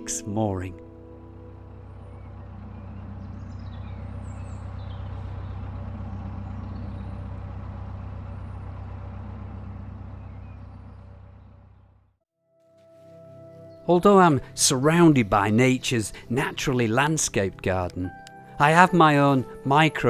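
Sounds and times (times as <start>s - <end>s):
boat engine drone: 0.0s - 11.9s
faint bird chirps: 2.0s - 7.2s.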